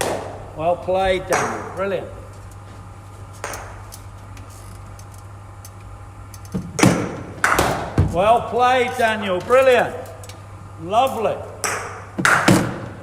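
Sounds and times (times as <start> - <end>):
bat striking ball: 0.0 - 0.4, 6.8 - 8.0, 11.6 - 13.0
steady low hum: 0.0 - 13.0.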